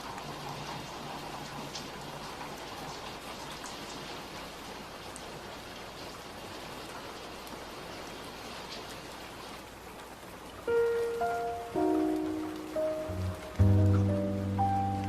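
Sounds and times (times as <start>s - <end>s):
raindrops ticking: 0.0s - 15.0s
steady rain hiss: 0.0s - 15.0s.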